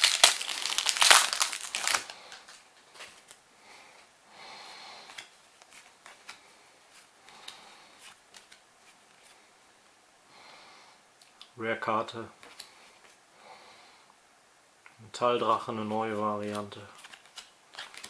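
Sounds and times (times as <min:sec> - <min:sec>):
foil wrapper crinkling: 0:00.0 - 0:03.4
trading cards sliding and flipping: 0:05.1 - 0:09.4, 0:15.8 - 0:18.0.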